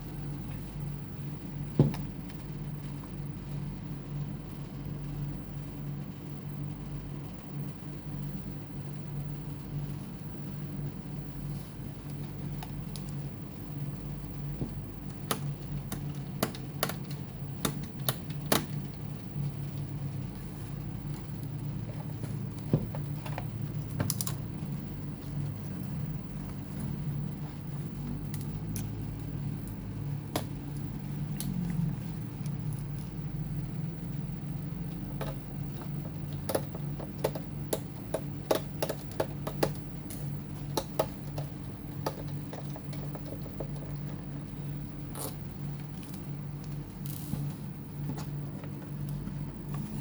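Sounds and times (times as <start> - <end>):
steady low hum: 0.0 - 50.0
clicks of laptop parts and screws: 35.2 - 43.9.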